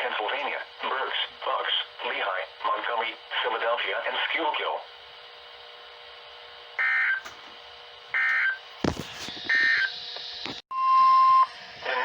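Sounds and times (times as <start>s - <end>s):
radio hiss: 0.0s - 5.0s, 8.8s - 10.6s.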